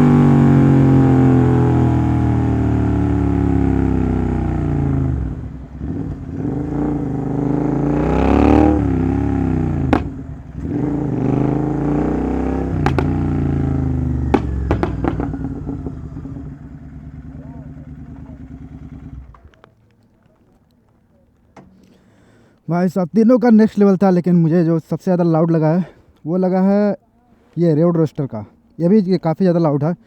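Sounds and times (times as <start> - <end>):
exhaust popping: 0.0 - 19.5
motorcycle engine revving: 0.0 - 19.5.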